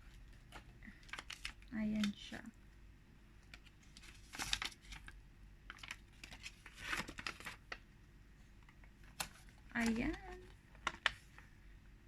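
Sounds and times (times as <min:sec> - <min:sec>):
paper and plastic packaging crinkling: 0:00.0 - 0:02.5, 0:03.5 - 0:07.8, 0:08.6 - 0:11.5.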